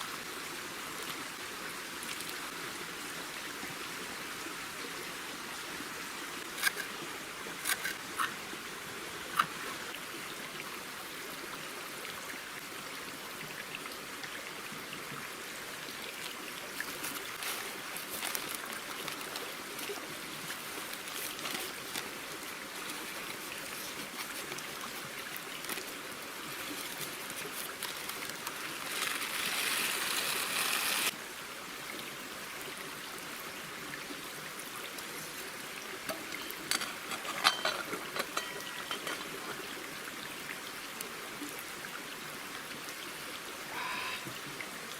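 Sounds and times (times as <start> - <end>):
campfire crackling hiss: 14.7 - 32.0.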